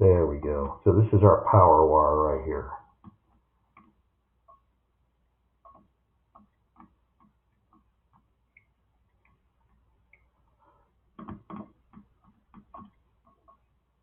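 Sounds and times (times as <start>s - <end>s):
faint steady ticking: 2.5s - 14.0s.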